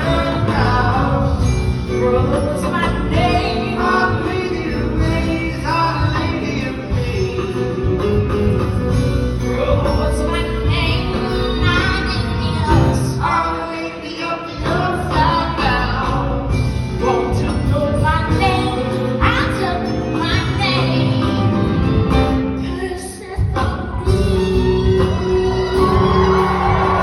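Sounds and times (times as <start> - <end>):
person singing: 0.0 - 21.5, 22.6 - 27.0
stage band playing: 0.0 - 27.0.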